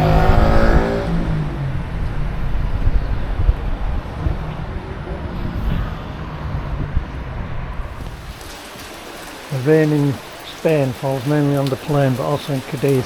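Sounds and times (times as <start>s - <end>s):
wind buffeting microphone: 0.0s - 9.4s.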